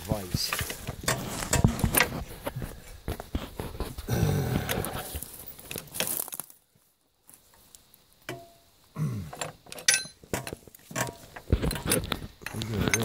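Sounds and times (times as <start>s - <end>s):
light metal clicks and clinks: 9.3s - 13.0s.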